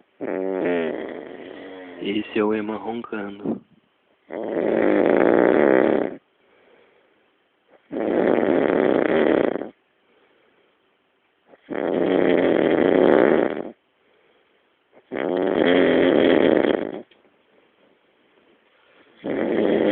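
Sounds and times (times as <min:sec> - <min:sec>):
man snoring loudly: 0:00.2 - 0:02.4, 0:04.3 - 0:06.2, 0:07.9 - 0:09.8, 0:11.6 - 0:13.8, 0:15.1 - 0:17.1, 0:19.2 - 0:19.9
faint breaths: 0:06.2 - 0:07.9, 0:10.0 - 0:11.0, 0:13.9 - 0:15.0, 0:17.2 - 0:19.9.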